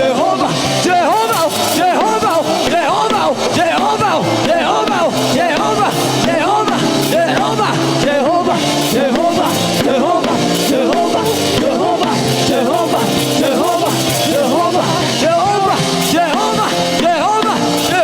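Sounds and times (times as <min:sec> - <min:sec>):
drums: 0:00.0 - 0:18.0
keyboard chords: 0:00.0 - 0:18.0
person singing with vibrato: 0:00.0 - 0:18.0.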